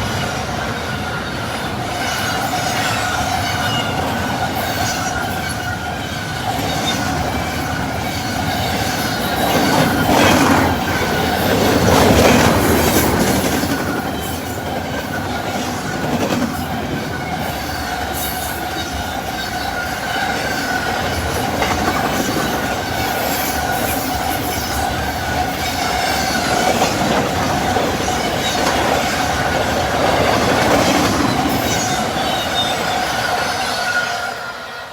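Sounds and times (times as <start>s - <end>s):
train wheels clicking over rail joints: 0.0s - 34.1s.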